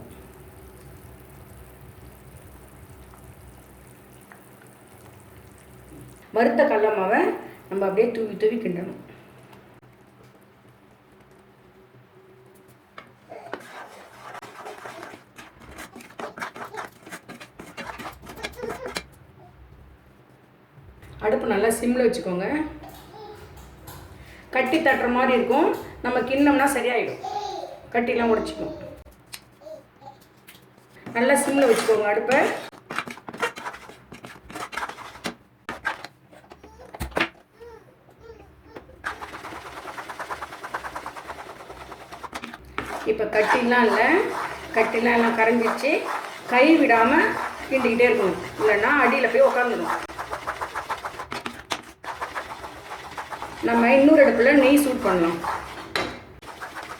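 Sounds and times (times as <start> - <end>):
spoon scraping a pan: 13.4 - 19.1, 31.2 - 36.1, 39.0 - 56.9
faint child's voice: 18.4 - 19.6, 22.9 - 23.6, 36.6 - 39.0.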